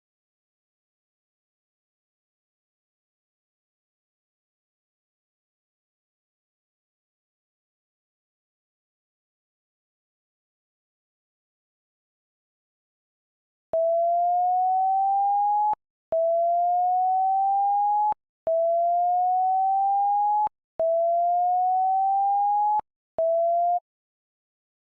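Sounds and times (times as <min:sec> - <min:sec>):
rising electronic test tone beeps: 0:13.8 - 0:23.8.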